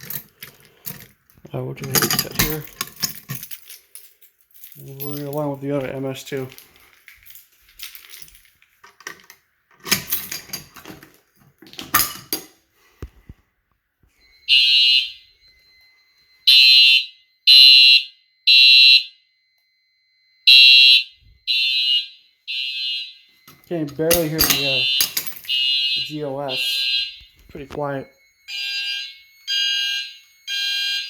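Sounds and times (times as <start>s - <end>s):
clattering handling: 0.0s - 12.6s, 23.4s - 25.6s
faint steady tone: 11.9s - 16.5s, 19.1s - 20.5s, 23.1s - 30.6s
fire alarm horn blasts: 14.2s - 31.0s.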